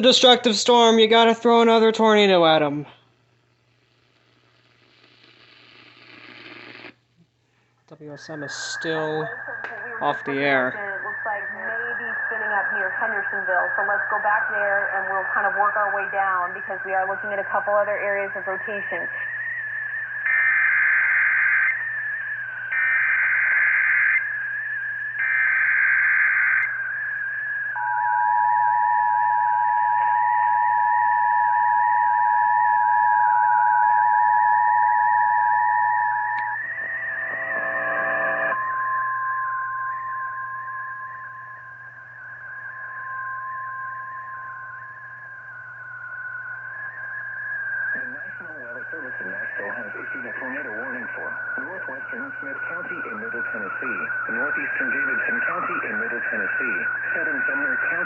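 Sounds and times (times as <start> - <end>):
low hum: 7.0 - 23.6, 26.6 - 58.0
screeching data bursts: 8.0 - 17.1, 18.2 - 58.0
wavering whistle: 8.2 - 16.1, 18.1 - 58.0.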